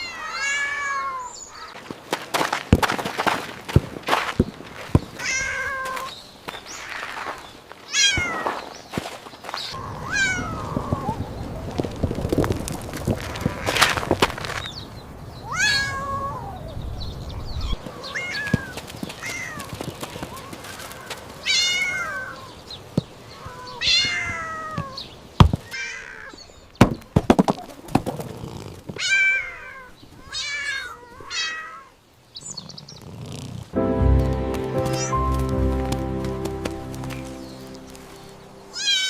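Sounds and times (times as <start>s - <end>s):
cat meowing: 0.0s - 1.7s, 10.0s - 11.2s, 29.0s - 31.9s, 38.7s - 39.0s.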